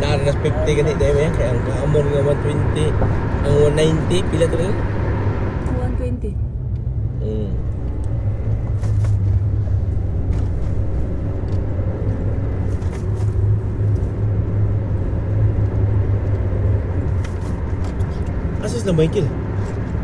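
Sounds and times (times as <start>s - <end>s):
car road and engine rumble: 0.0s - 20.0s.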